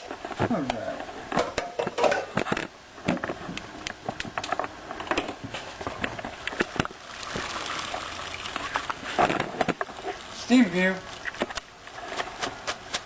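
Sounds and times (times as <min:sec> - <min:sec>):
rushing hiss of draining water: 0:07.0 - 0:09.2.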